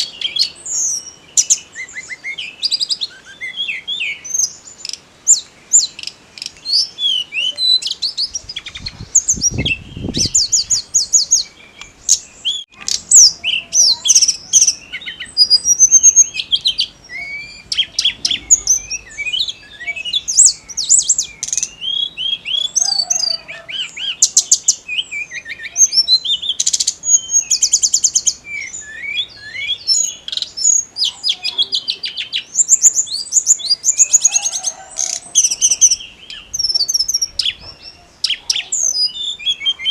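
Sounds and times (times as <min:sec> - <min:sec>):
bird singing chirps and trills: 0:00.0 - 0:39.9.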